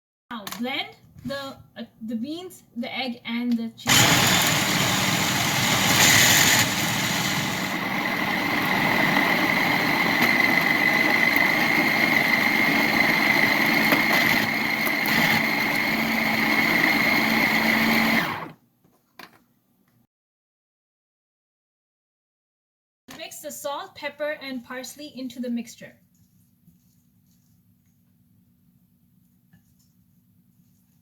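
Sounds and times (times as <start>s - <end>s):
blender motor whining: 3.9s - 18.6s.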